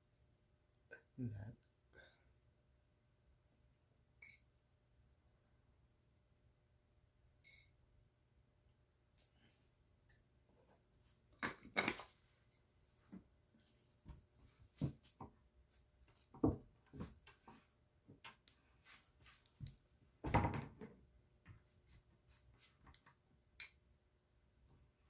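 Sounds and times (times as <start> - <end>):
objects being handled and set down: 11.4 - 12.3, 16.1 - 21.7.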